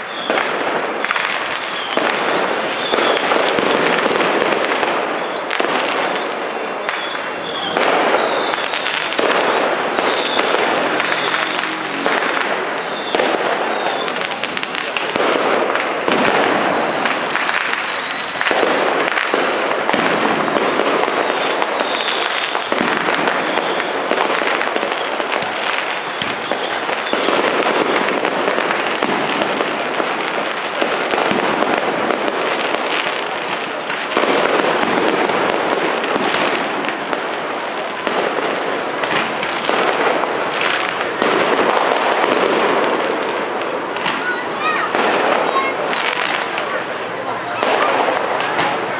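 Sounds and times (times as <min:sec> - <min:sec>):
fireworks crackling and popping: 0:00.0 - 0:48.9
faint high whistle: 0:06.8 - 0:12.0, 0:12.8 - 0:18.5, 0:21.2 - 0:22.7.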